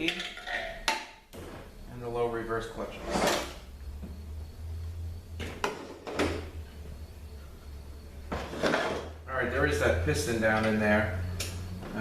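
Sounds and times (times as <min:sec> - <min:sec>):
steady low hum: 0:00.8 - 0:12.0.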